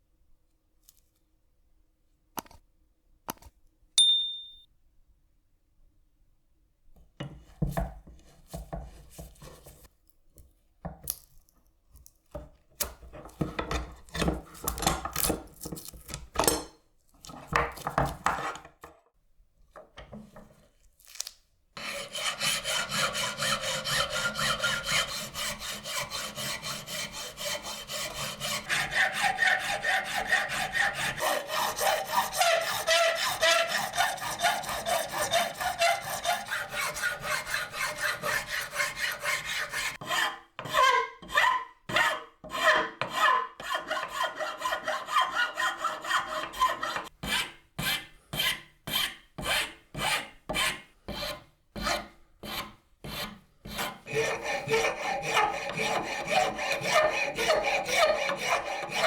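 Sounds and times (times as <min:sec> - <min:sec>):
short metallic ping: 0:04.0 - 0:04.7
fast back-and-forth rasping: 0:21.8 - 0:40.0.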